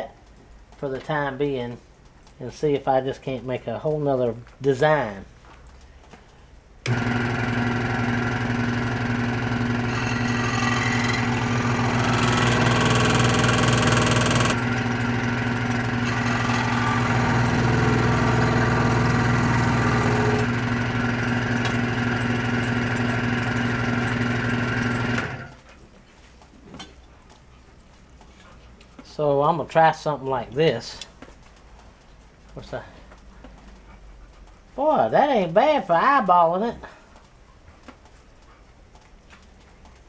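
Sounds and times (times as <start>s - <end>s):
electric power tool shaping plastic: 6.8s - 25.6s.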